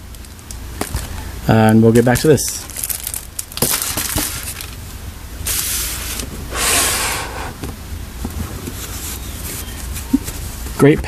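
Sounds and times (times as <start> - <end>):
packaging rustling and sliding: 2.0 - 4.8, 5.4 - 7.2, 8.2 - 10.7.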